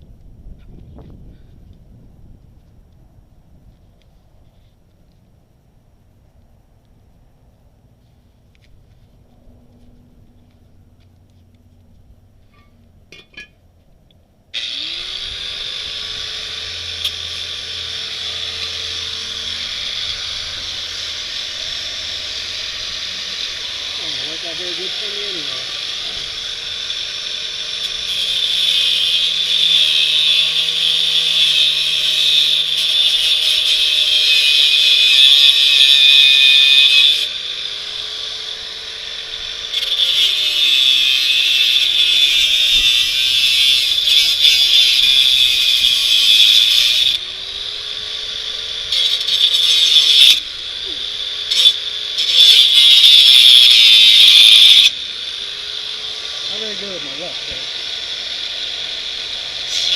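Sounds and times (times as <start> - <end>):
grinder cutting steel tubing: 14.6 - 59.9.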